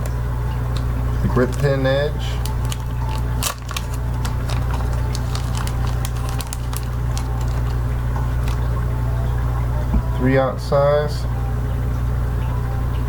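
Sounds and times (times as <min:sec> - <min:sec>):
plastic packaging crackling: 0:00.0 - 0:08.9
steady low hum: 0:00.0 - 0:13.0.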